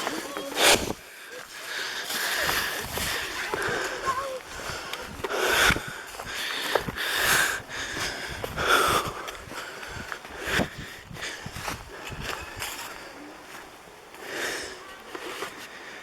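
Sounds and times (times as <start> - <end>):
man breathing hard and wheezing: 0.6 - 12.6.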